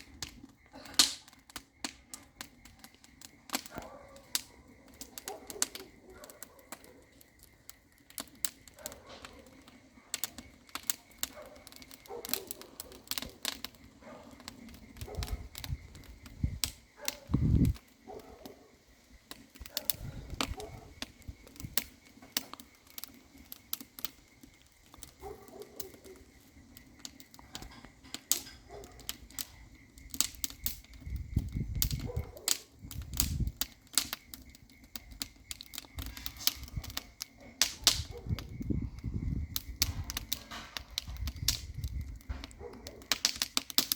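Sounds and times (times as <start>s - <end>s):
wood fire crackling: 0.0s - 43.9s.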